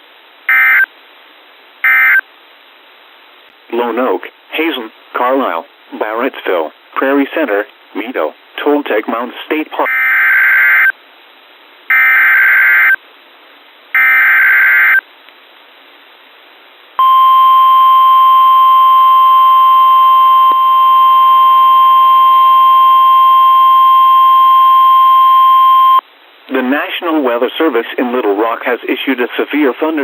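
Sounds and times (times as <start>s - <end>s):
steady electronic warning tone: 17.0s - 26.0s.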